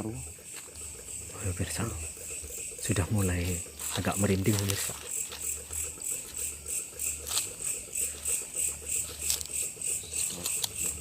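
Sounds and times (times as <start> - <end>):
insects chirping: 0.0 - 11.0.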